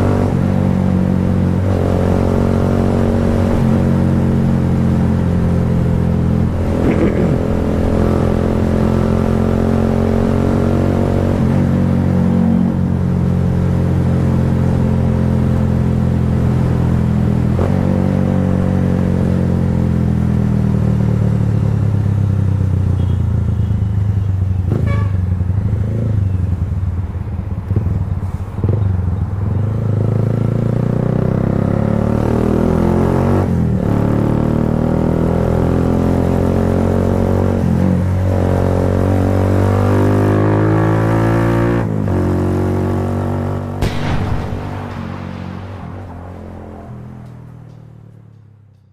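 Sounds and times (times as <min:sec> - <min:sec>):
motorcycle engine revving: 0:00.0 - 0:23.1.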